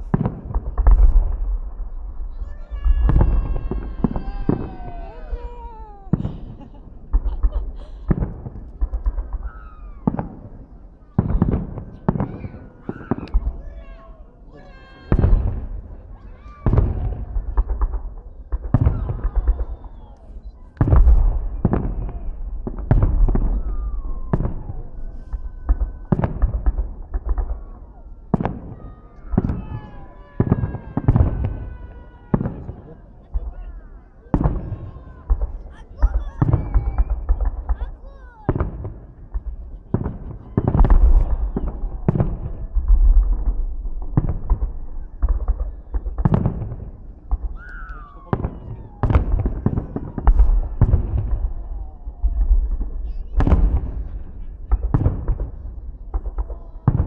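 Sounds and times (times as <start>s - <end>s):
fireworks booming: 0.0s - 57.0s
fireworks cracks: 0.0s - 57.0s
falling firework whistle: 2.5s - 6.6s, 9.0s - 10.4s, 18.8s - 22.3s, 23.0s - 26.9s, 36.0s - 38.6s, 40.0s - 42.5s, 47.5s - 53.9s.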